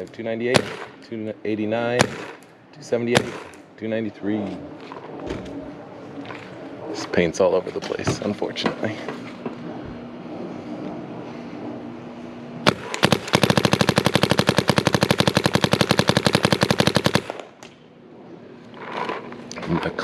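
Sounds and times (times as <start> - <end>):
paintball marker firing: 0.5 - 1.0, 2.0 - 2.5, 3.1 - 3.6, 12.7 - 17.7.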